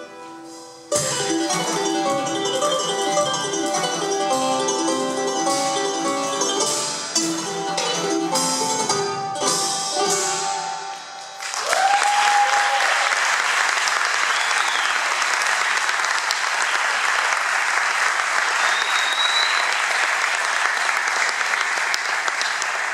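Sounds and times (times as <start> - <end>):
audience applause: 11.4 - 22.9
high whistles: 14.2 - 15.1, 18.6 - 19.9.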